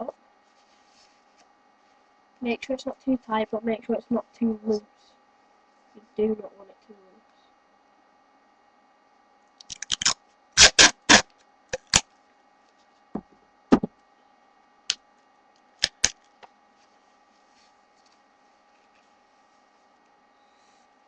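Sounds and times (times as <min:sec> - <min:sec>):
sticky tape and paper crackling: 0:09.6 - 0:12.0, 0:15.8 - 0:16.2.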